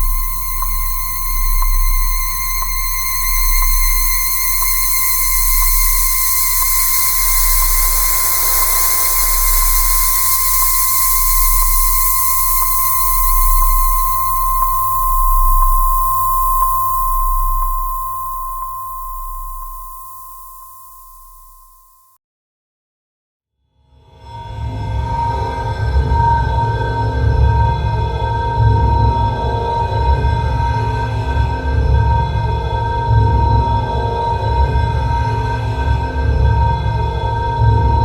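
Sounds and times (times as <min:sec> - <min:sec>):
deep pulsing hum and hiss: 0:00.0 - 0:21.6
faint ticks: 0:00.0 - 0:21.7
high-pitched synth tone: 0:00.0 - 0:22.0.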